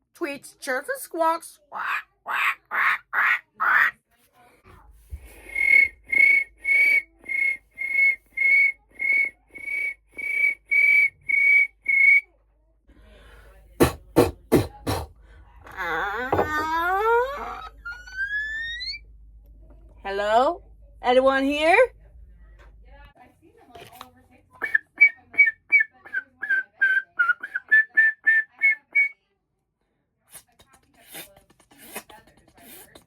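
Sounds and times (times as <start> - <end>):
whistled chirps: 5.3 - 12.3, 17.7 - 19.1, 24.6 - 29.2.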